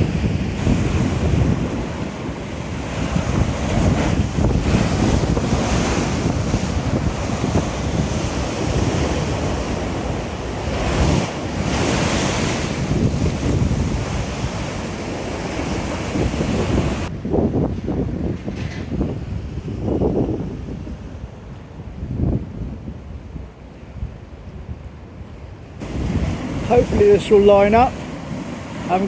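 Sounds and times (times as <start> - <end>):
waves washing on shore: 0.0 - 17.1, 23.0 - 29.0
wind buffeting microphone: 0.0 - 29.0.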